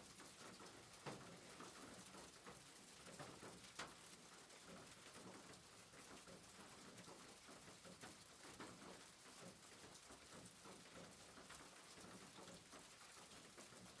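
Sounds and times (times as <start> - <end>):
rain pattering on a roof: 0.0 - 14.0.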